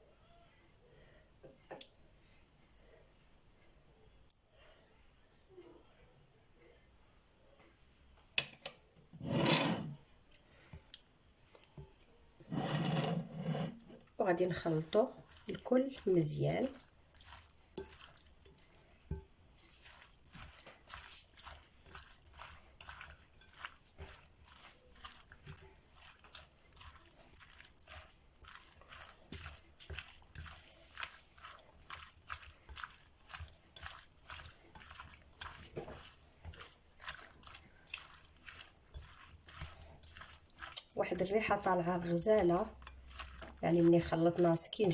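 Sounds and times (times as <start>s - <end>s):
wet squelching mixing strokes: 9.2s - 44.9s.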